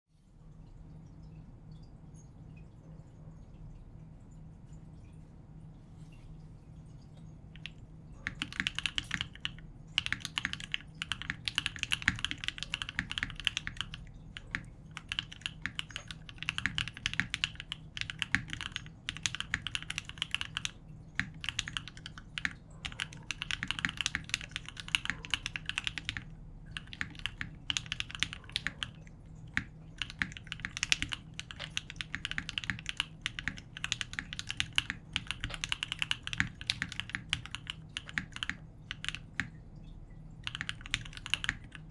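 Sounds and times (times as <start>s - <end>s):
mechanical keyboard typing: 7.6s - 39.6s, 40.4s - 41.9s.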